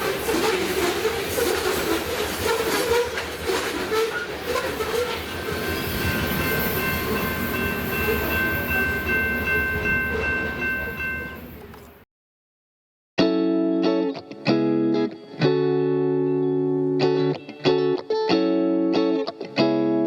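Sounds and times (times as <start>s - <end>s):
train horn: 0.0s - 9.1s
train wheel and rail noise: 0.0s - 12.0s.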